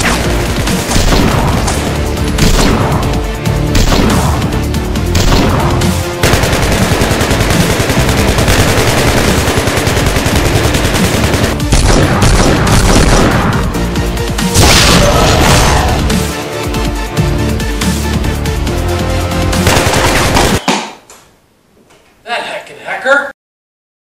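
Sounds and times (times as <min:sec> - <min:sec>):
loud background music: 0:00.0 - 0:20.6
automatic gunfire bursts: 0:06.2 - 0:13.5, 0:19.6 - 0:20.7.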